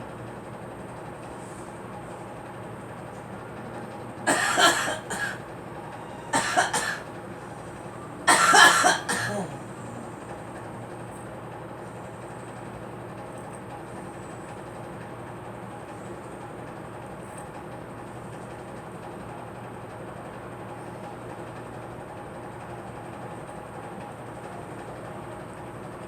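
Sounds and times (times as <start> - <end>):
steady background hum: 0.0 - 26.0
girl coughing: 4.3 - 5.4, 6.4 - 7.1, 8.3 - 9.6.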